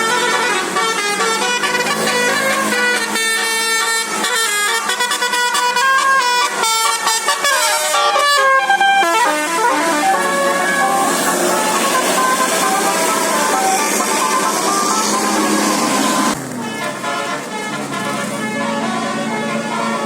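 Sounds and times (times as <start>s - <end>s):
bus horn playing a melody: 0.0s - 20.0s.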